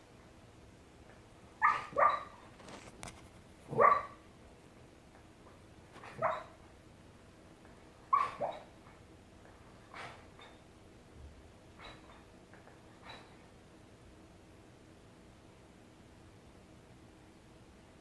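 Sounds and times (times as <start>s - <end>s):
dog barking softly: 1.6s - 2.4s, 3.7s - 4.2s, 6.0s - 6.6s, 8.1s - 9.0s, 11.8s - 12.3s.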